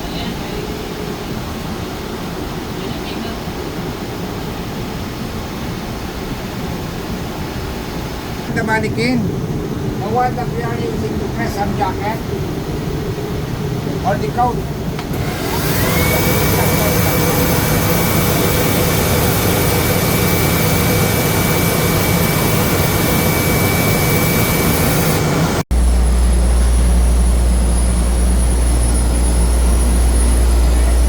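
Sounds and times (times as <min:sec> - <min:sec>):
laundry machinery rushing whine: 0:00.0 - 0:31.0
deep machine hum: 0:08.5 - 0:31.0.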